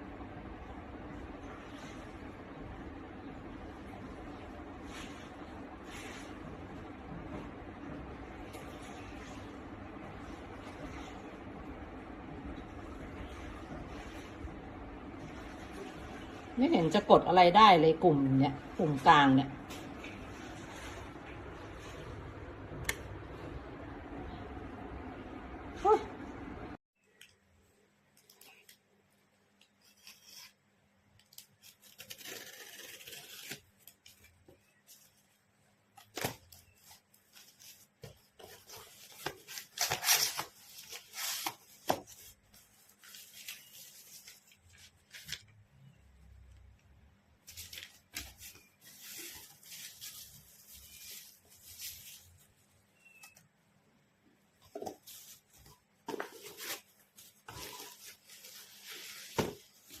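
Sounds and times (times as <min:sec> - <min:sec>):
rustling and rubbing: 0:03.8 - 0:11.6, 0:19.6 - 0:22.7, 0:31.5 - 0:45.5, 0:47.4 - 0:53.4, 0:54.6 - 1:00.0.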